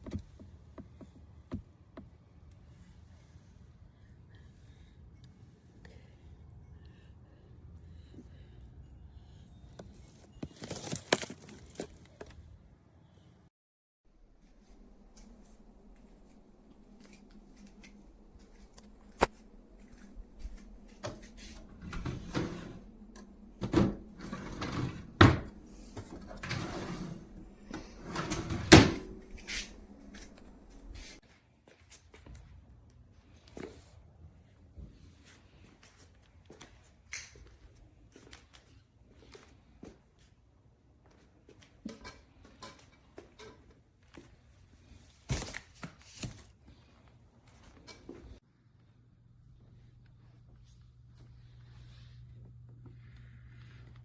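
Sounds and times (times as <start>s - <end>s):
drawers sliding: 16.7s - 31.2s
drawer knocking shut: 21.0s - 30.4s.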